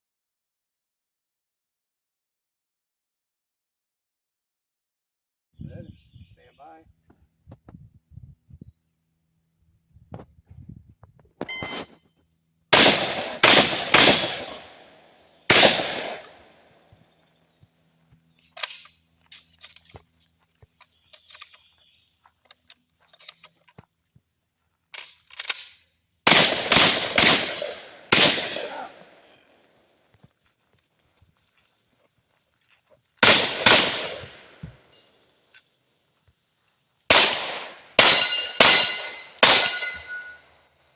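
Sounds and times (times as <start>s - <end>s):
gunshots: 12.7s - 16.5s, 26.3s - 29.3s, 33.2s - 34.8s, 37.1s - 40.4s.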